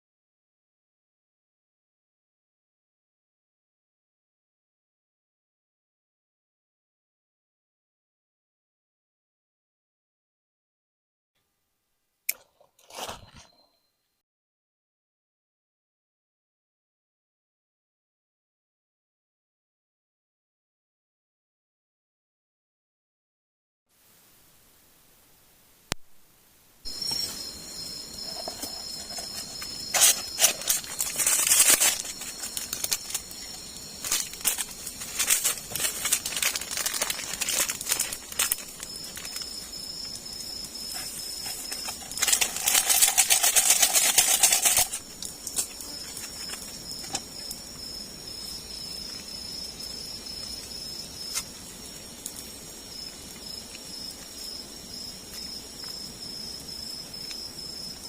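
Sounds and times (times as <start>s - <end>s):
crackles and clicks: 26.8s - 47.9s, 49.0s - 54.6s
rustling noise: 26.9s - 40.1s, 40.8s - 47.3s
insects trilling: 26.9s - 58.0s.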